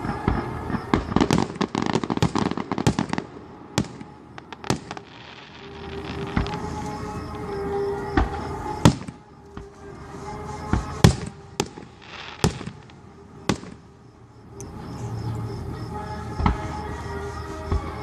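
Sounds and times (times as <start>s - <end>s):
fireworks booming: 0.0s - 9.8s, 10.6s - 14.0s, 16.3s - 16.8s
music playing: 0.0s - 18.0s.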